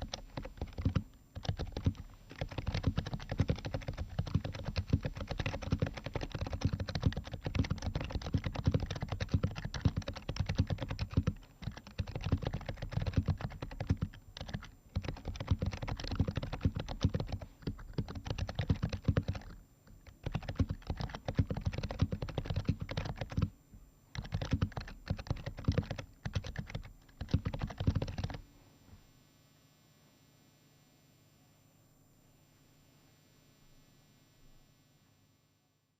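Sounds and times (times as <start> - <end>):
keyboard typing: 0.0 - 23.5, 24.1 - 28.4.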